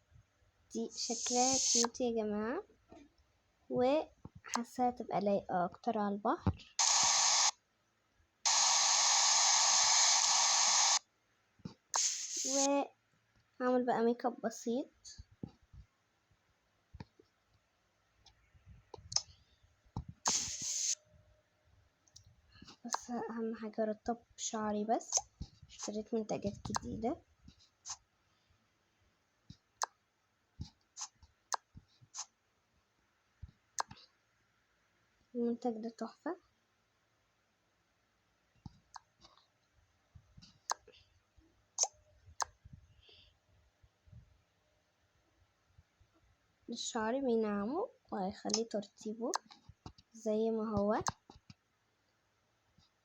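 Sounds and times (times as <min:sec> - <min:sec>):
aerosol hair spray hissing: 0:00.9 - 0:01.9, 0:06.8 - 0:07.5, 0:08.5 - 0:11.0, 0:12.0 - 0:12.7, 0:20.3 - 0:21.0.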